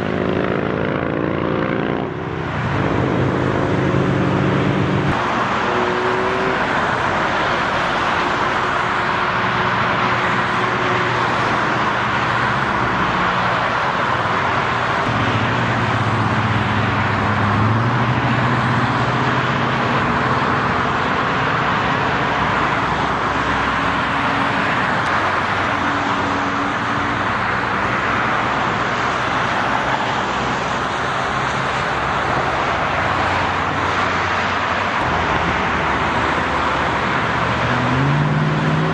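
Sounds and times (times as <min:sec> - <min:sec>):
freeway traffic rushing: 0:00.0 - 0:38.9
heavy vehicle engine drone: 0:00.0 - 0:38.9.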